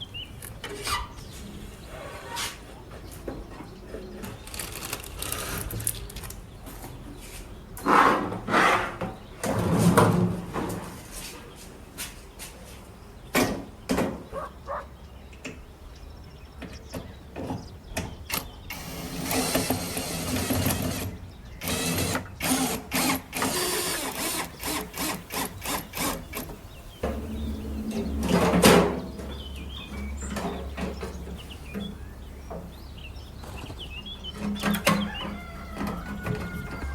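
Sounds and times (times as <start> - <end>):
steady low hum: 26.8 - 33.4.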